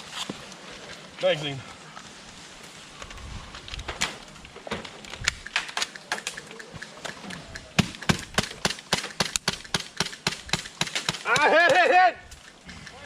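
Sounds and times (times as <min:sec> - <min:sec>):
airsoft guns firing: 0:07.7 - 0:11.8.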